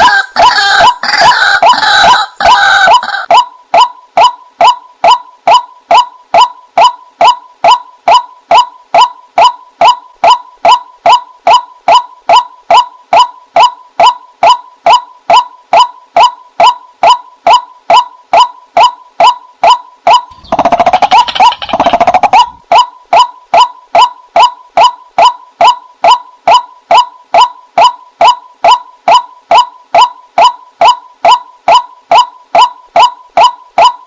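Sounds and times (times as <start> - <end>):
waterhen calling: 0.0 - 3.4, 19.6 - 23.3.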